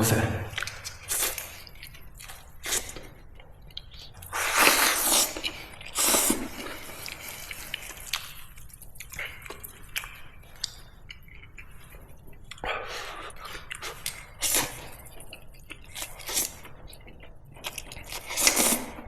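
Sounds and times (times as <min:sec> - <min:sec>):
wet chewing with small clicks: 0:00.5 - 0:04.3, 0:05.1 - 0:19.0
person slurping noodles: 0:04.2 - 0:08.0.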